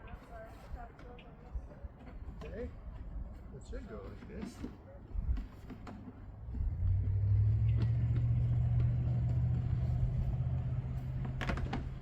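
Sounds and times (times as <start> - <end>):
vehicle engine rumble: 5.3 - 12.0.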